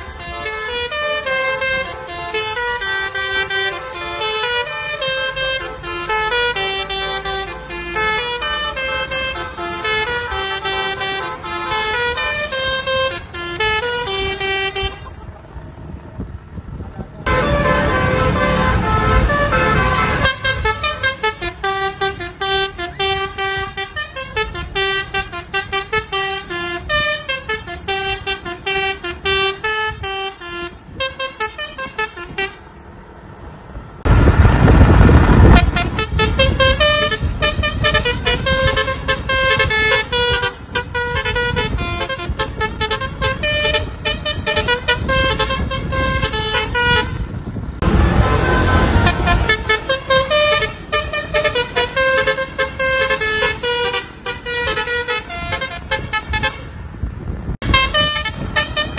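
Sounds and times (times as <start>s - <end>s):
bus horns playing melody: 0.0s - 15.5s, 17.2s - 32.9s, 34.0s - 58.9s
loud rush of noise: 32.7s - 38.0s, 47.2s - 51.0s.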